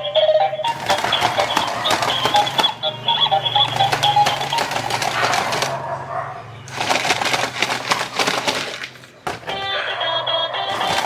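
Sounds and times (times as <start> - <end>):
plastic toy parts clicking: 0.7 - 5.8, 6.7 - 9.8, 10.7 - 11.0.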